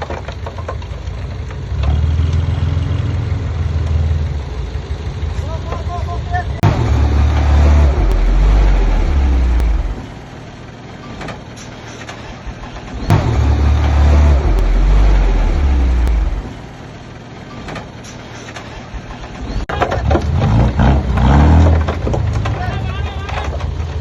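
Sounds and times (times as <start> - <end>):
heavy diesel engine rumbling: 0.0 - 24.0
sharp knock: 6.6 - 8.8, 13.1 - 16.5.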